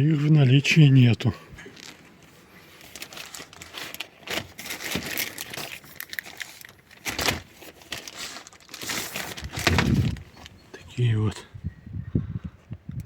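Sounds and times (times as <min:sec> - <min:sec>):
plastic packaging crinkling: 0:01.6 - 0:10.6.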